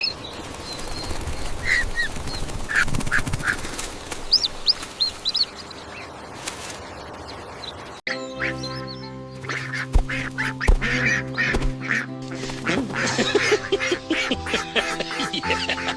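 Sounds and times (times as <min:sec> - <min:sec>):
bird chirps and twitters: 0:04.3 - 0:12.0
music: 0:08.1 - 0:15.9.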